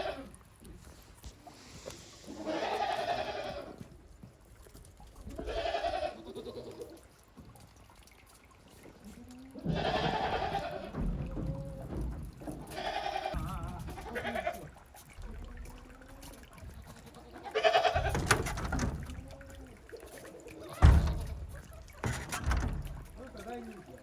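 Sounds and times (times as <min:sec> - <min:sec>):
goats bleating: 0:00.0 - 0:00.4, 0:02.2 - 0:04.0, 0:05.3 - 0:07.0, 0:09.0 - 0:23.3.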